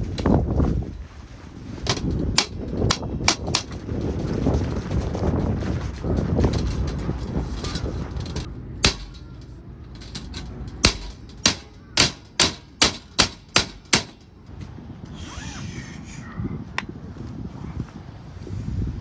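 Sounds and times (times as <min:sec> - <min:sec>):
hammer blows: 0:01.8 - 0:14.4.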